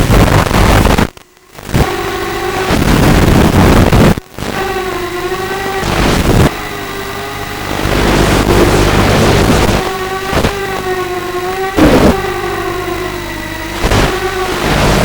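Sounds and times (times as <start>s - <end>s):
rushing wind noise: 0.0s - 2.0s, 2.6s - 4.6s, 5.7s - 11.0s, 11.7s - 12.4s, 13.2s - 15.0s
drone motors whining: 0.3s - 15.0s.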